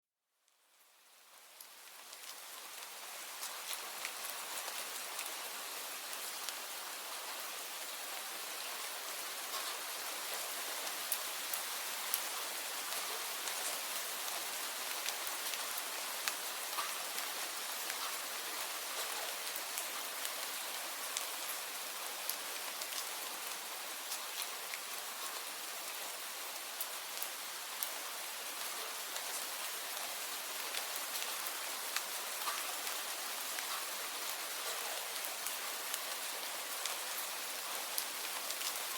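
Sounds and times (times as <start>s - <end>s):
steady rain hiss: 0.4s - 38.9s.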